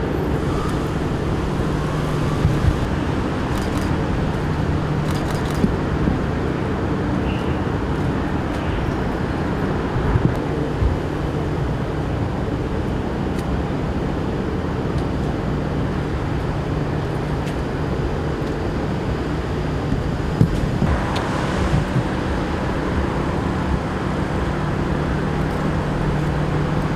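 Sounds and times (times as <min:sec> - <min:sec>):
vehicle engine idling: 0:00.1 - 0:06.6, 0:20.6 - 0:26.9
hiss: 0:00.3 - 0:06.3, 0:20.6 - 0:26.9.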